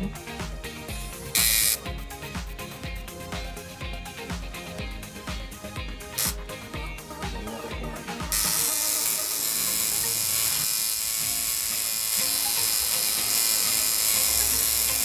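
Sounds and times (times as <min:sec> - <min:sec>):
tattoo machine buzzing: 0:00.1 - 0:15.0.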